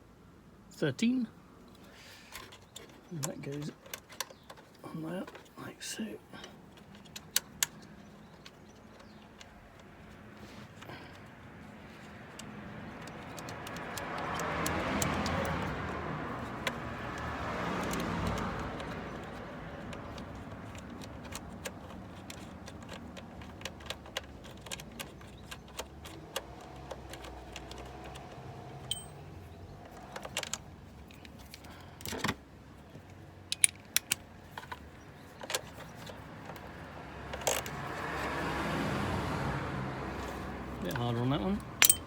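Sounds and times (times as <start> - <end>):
low traffic hum: 0.0 - 42.0
hand tools clicking and clinking: 2.2 - 5.6, 6.4 - 32.2, 33.1 - 38.0, 40.8 - 42.0
car passing: 12.6 - 19.7, 36.3 - 42.0.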